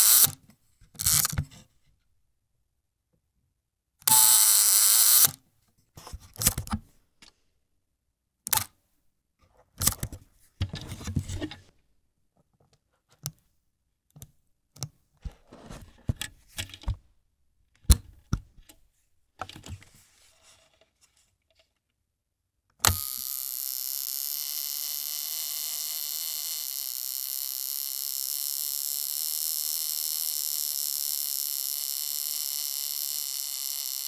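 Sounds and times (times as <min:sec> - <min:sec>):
camera mechanical clicks: 0:04.1 - 0:05.4, 0:22.8 - 0:34.0.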